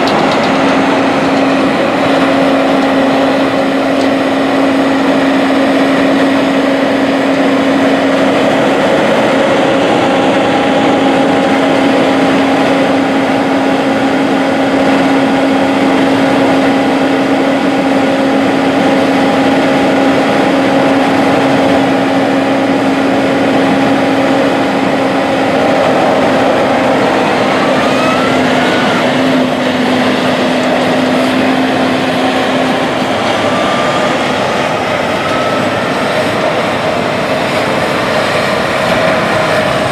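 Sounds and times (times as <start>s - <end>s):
vehicle engine drone: 0.0s - 39.9s
short rising whines: 20.9s - 36.4s.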